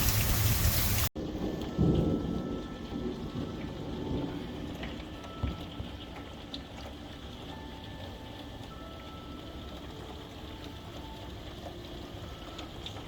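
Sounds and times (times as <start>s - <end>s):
thunder rumbling: 0.0s - 7.4s
rain falling steadily: 0.0s - 13.0s
light drip ticks: 1.6s - 13.0s.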